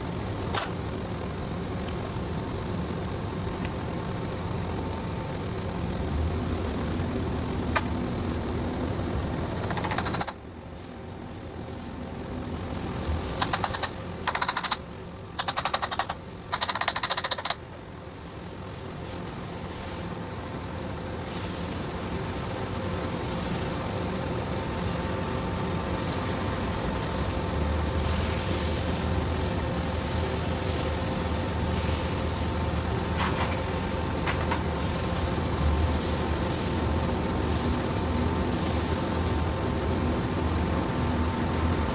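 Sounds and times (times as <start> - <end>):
rapid mechanical rattling: 0.0 - 10.5, 12.3 - 17.9
machine hum: 0.0 - 41.9.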